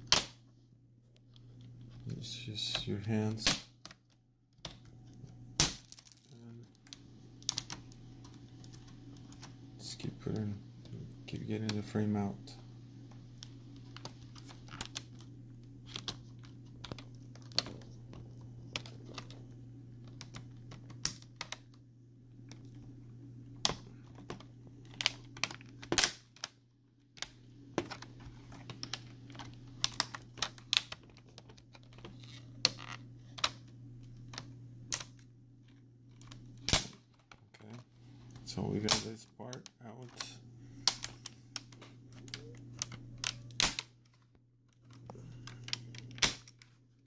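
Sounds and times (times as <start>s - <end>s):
plastic clips snapping: 44.8s - 46.7s.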